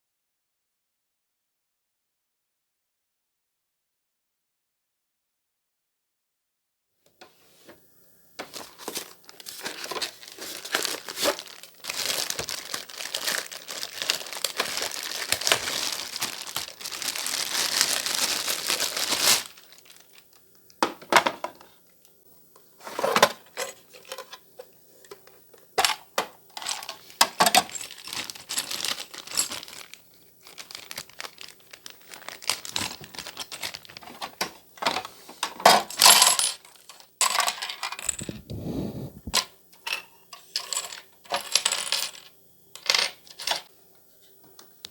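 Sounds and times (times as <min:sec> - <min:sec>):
packaging crinkling and rustling: 0:08.4 - 0:21.8, 0:26.6 - 0:37.0.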